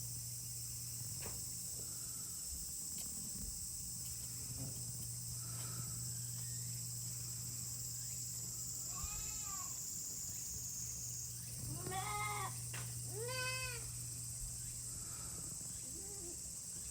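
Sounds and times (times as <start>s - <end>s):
insects droning: 0.0s - 16.9s
goat kid bleating: 8.9s - 9.8s, 11.7s - 13.9s.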